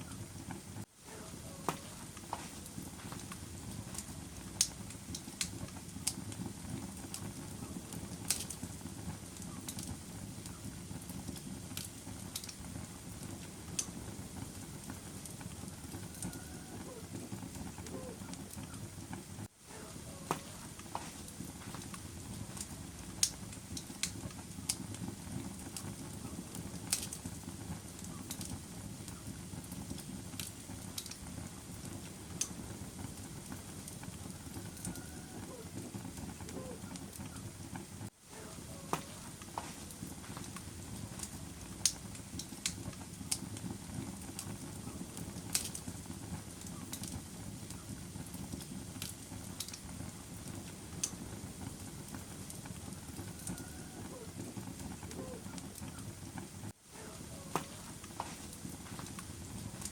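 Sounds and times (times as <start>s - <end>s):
fire crackling and popping: 0.0s - 59.9s
low rush of flames: 0.0s - 59.9s.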